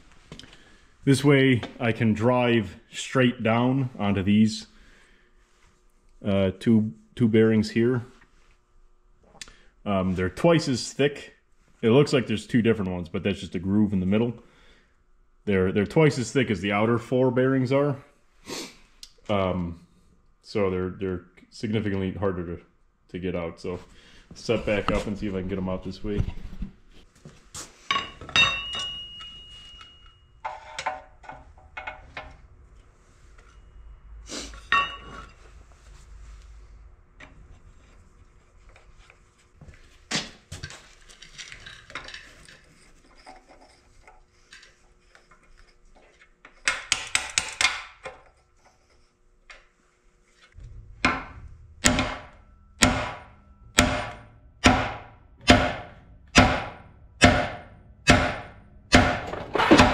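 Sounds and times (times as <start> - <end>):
metal tools clanking: 27.9 - 32.4, 34.5 - 35.5, 59.2 - 59.9
hammer striking metal driver: 51.0 - 59.9.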